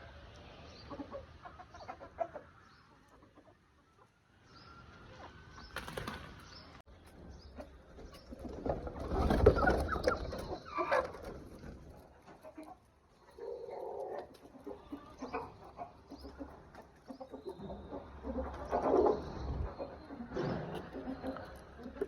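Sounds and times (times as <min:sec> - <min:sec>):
chickens clucking: 0:00.0 - 0:22.0
wing flapping: 0:05.7 - 0:06.5.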